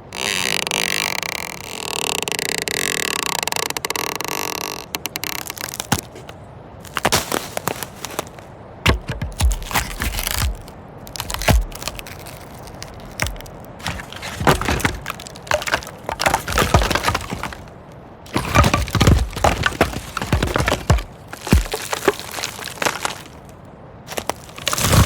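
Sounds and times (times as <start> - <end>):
wood cracking and snapping: 5.0 - 23.5, 24.1 - 25.0
faint forest ambience: 5.1 - 16.7.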